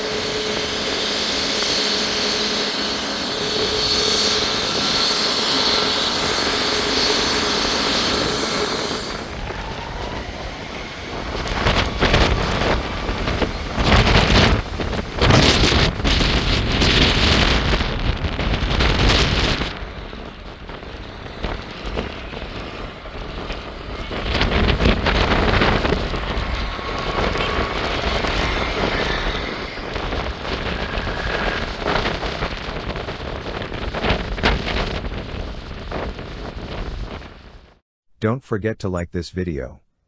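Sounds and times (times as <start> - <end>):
jet engines running: 0.0 - 37.8
wind buffeting microphone: 0.0 - 37.8.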